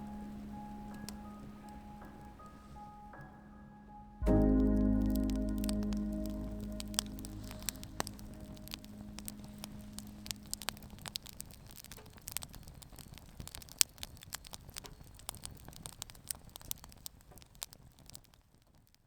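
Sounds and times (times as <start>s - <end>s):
wood fire crackling and popping: 0.0s - 3.2s, 4.2s - 19.0s
background music: 0.0s - 10.8s.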